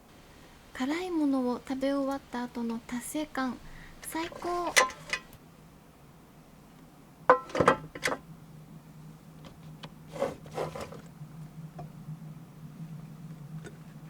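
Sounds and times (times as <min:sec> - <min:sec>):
faint low hum: 0:00.0 - 0:14.0
knocks and rubbing of handling: 0:04.0 - 0:05.4, 0:07.3 - 0:08.2, 0:09.5 - 0:11.1.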